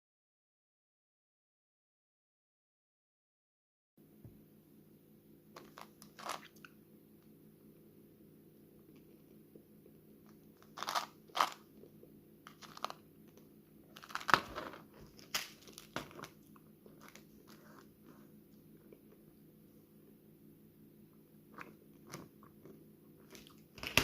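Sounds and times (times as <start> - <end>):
gum pack crinkling: 5.6 - 6.7, 10.2 - 17.9.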